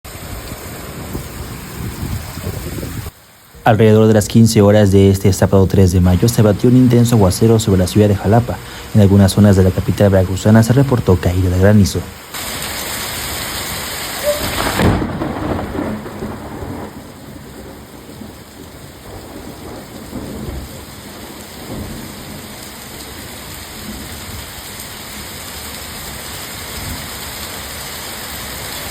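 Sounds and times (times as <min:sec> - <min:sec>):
heavy rain pouring: 0:00.1 - 0:28.9
low rumble of thunder: 0:14.2 - 0:24.8.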